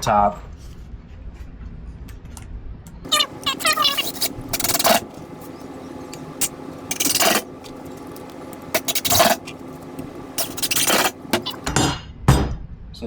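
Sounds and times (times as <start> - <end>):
wooden pieces scraping: 3.1 - 11.7.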